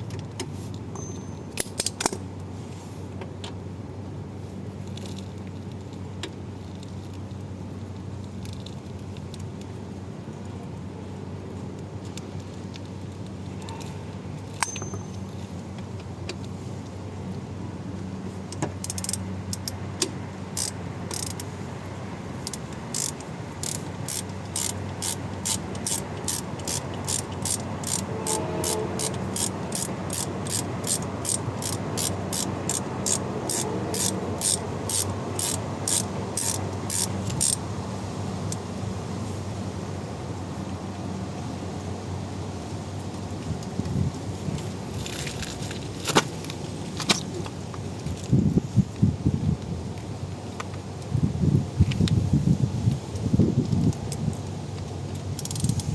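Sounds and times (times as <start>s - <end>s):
low steady hum: 3.6s - 42.0s
ratchet wrench clicking: 18.8s - 21.5s, 22.4s - 37.6s, 55.4s - 55.9s.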